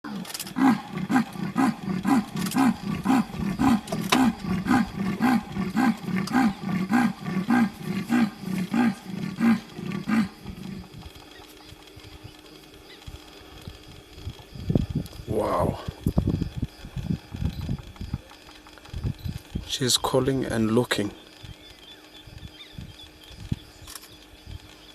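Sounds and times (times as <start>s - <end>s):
leopard rasping grunts: 0.4s - 11.0s.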